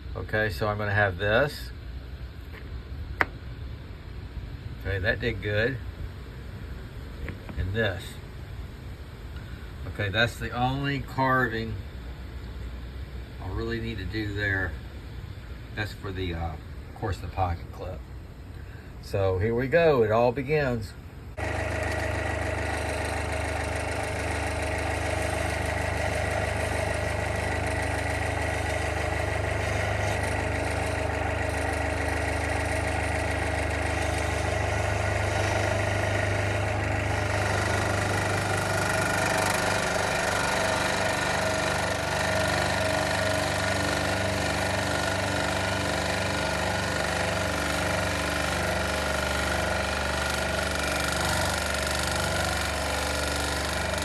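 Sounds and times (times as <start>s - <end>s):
power tool motor hum: 21.4s - 54.0s.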